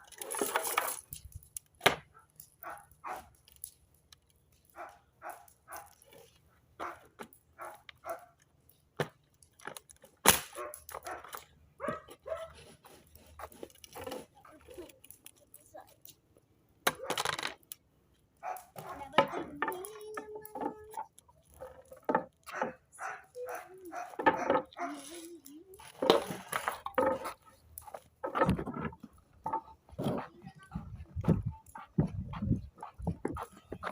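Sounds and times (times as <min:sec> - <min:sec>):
dog barking and yipping: 0:02.1 - 0:03.3, 0:04.7 - 0:06.0, 0:06.8 - 0:08.4, 0:10.5 - 0:12.6, 0:18.4 - 0:19.6, 0:21.6 - 0:25.2.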